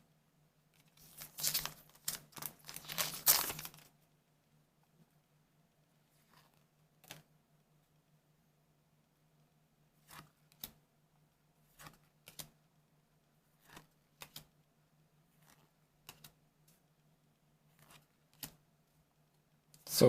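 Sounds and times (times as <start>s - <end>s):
trading cards sliding and flipping: 10.0s - 10.8s, 11.7s - 12.5s, 13.6s - 14.5s, 15.4s - 16.8s, 17.7s - 18.6s.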